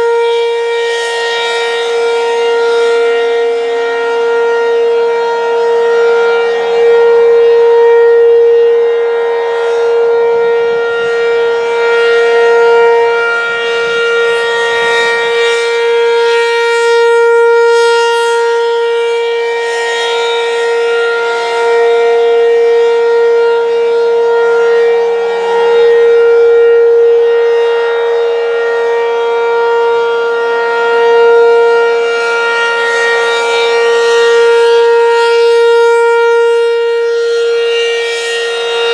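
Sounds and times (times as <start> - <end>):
outdoor warning siren: 0.0 - 38.9.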